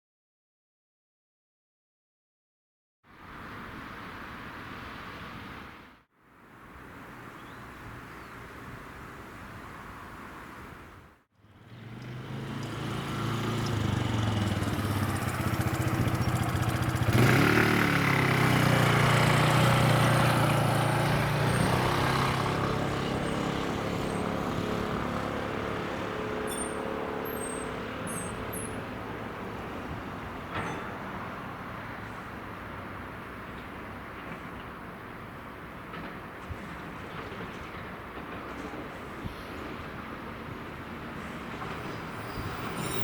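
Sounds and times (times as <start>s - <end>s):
vehicle engine passing by: 11.4s - 29.6s.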